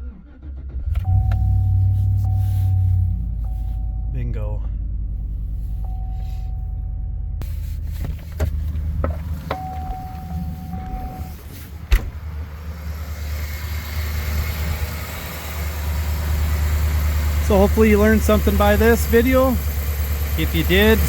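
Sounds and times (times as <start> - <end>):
pickup engine idling: 0.8 - 21.0.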